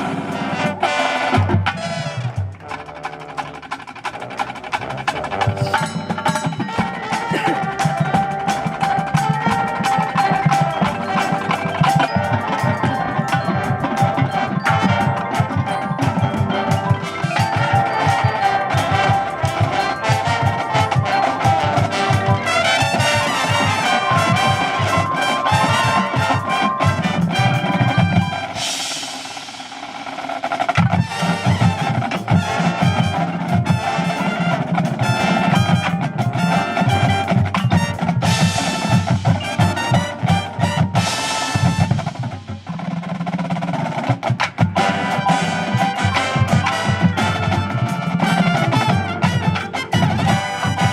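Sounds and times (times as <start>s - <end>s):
drums playing busy rhythm: 0.0s - 50.9s
marimba: 0.0s - 50.9s
glockenspiel: 4.8s - 30.0s, 30.8s - 42.3s.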